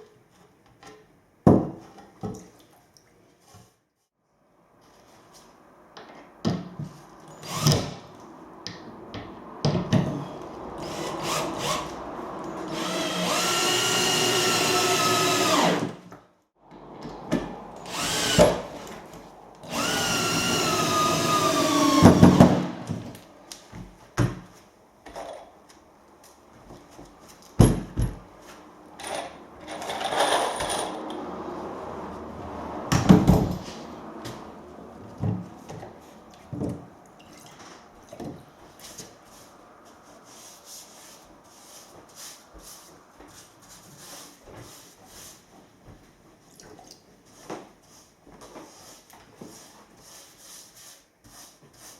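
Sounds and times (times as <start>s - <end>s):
power drill whine: 7.3s - 8.0s, 10.8s - 16.0s, 17.8s - 22.8s.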